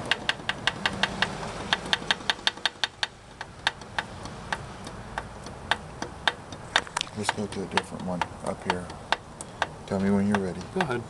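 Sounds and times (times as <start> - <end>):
metal connecting rod clacking: 0.0 - 4.6.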